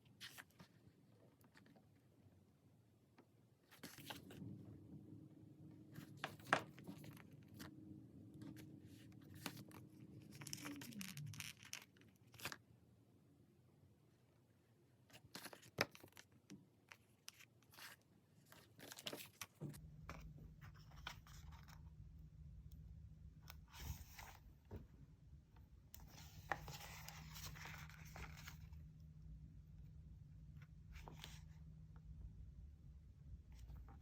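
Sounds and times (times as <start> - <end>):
faint low hum: 0.1 - 15.1, 19.6 - 34.0
paper rustling and tapping: 6.2 - 7.2.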